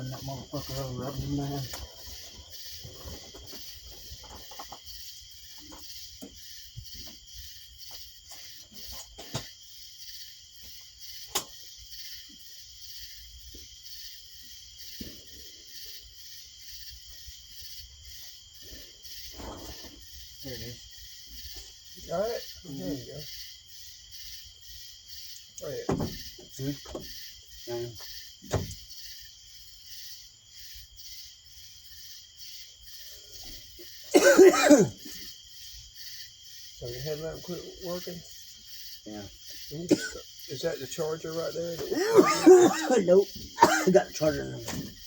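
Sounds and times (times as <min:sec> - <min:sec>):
insects chirring: 0:00.0 - 0:45.0.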